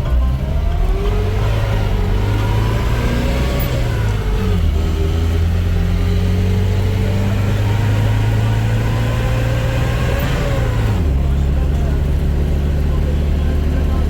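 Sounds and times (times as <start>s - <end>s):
vehicle engine droning while driving: 0.0s - 14.0s.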